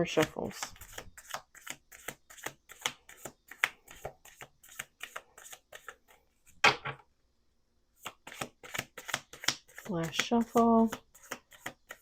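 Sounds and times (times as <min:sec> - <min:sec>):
cards shuffling clicks and flicks: 0:00.0 - 0:06.3, 0:08.0 - 0:12.0
card deck rustling: 0:08.0 - 0:12.0.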